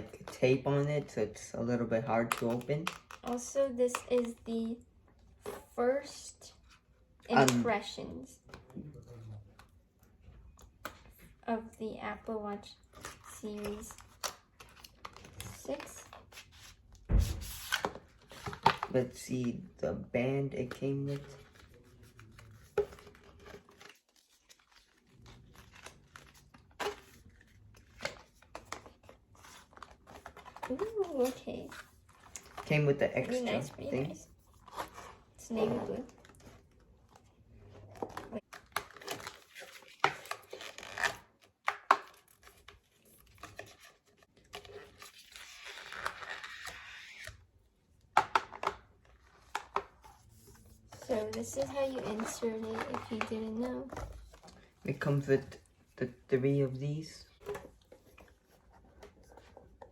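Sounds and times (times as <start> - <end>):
cardboard packaging tearing: 38.5 - 41.5, 44.5 - 47.4
packaging tearing and crinkling: 44.6 - 47.3.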